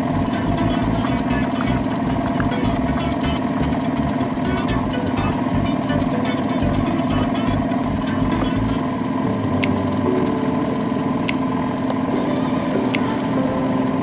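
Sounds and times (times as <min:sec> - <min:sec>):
chainsaw engine idling: 0:00.0 - 0:09.2.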